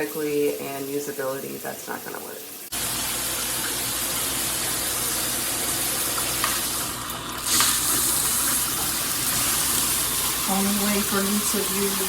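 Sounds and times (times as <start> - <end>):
shower water spraying: 2.7 - 12.0.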